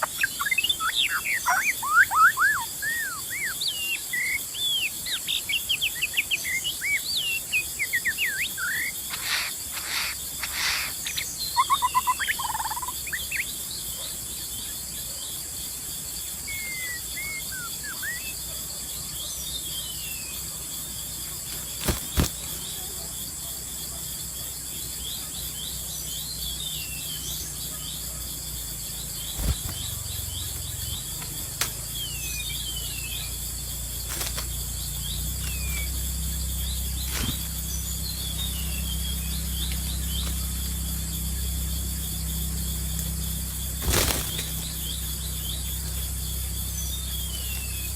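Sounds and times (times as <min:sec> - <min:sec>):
songbird whistles and chirps: 0:00.0 - 0:09.1, 0:11.1 - 0:14.1, 0:16.4 - 0:18.6
high insect drone: 0:00.0 - 0:47.9
sharp clicks: 0:29.4 - 0:29.9.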